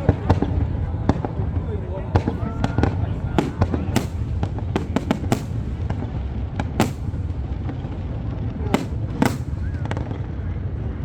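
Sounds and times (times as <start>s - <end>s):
fireworks bangs: 0.0s - 11.0s
steady low rumble: 0.0s - 11.0s.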